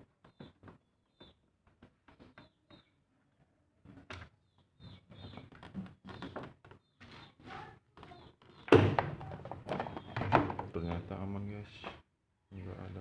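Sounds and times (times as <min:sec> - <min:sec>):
loud thunk: 0:08.7 - 0:09.2.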